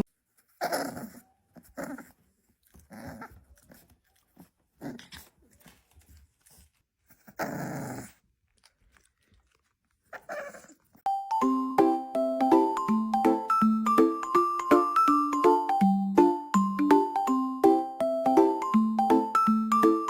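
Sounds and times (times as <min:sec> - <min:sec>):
tinkling mallet tune: 0:11.1 - 0:20.0.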